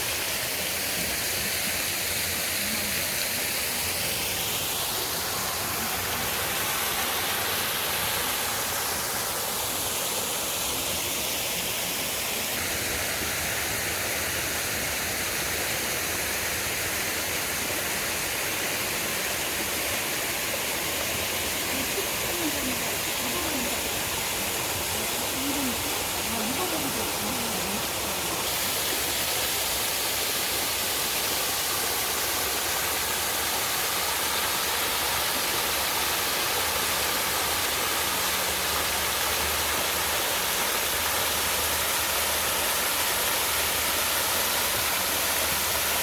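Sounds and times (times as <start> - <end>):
flowing water rushing: 0.0 - 46.0
faint voices: 2.0 - 8.5, 20.7 - 28.6.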